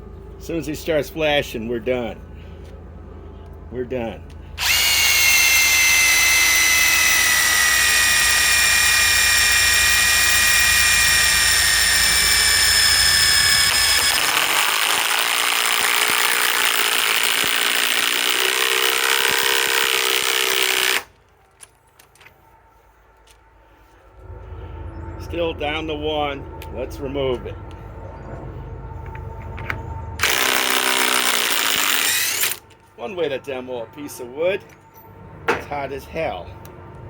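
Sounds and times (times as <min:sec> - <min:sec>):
impact wrench whining: 0:04.6 - 0:21.1, 0:30.2 - 0:32.6.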